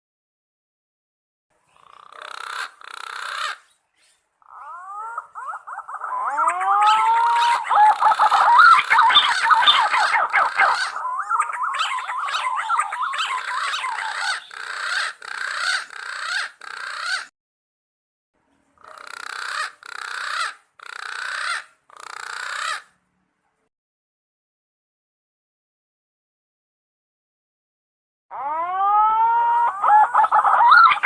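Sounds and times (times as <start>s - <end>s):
pigeons whistled warbling calls: 4.6s - 16.4s, 28.4s - 31.0s.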